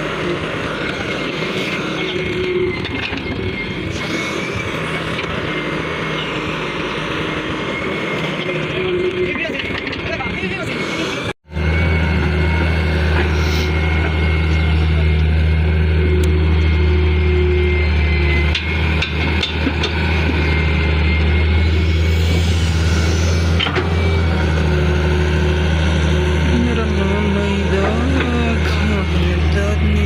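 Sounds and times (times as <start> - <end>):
diesel engine droning under load: 0.0 - 30.0.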